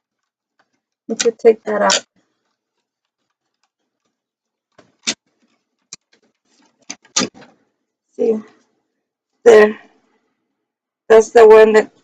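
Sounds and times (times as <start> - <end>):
wiring clicking and tapping: 0.0 - 7.7.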